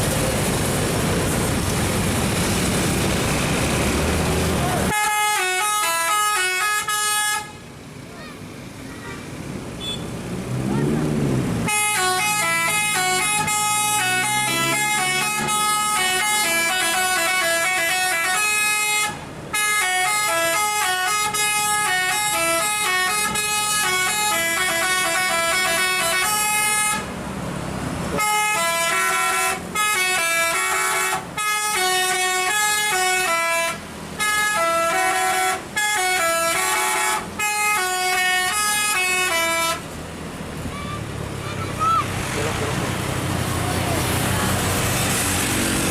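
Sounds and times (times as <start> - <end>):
bus engine revving: 0.0 - 45.9
multi-tone bus horn melody: 4.8 - 7.7, 9.8 - 10.2, 11.6 - 27.2, 28.1 - 40.0.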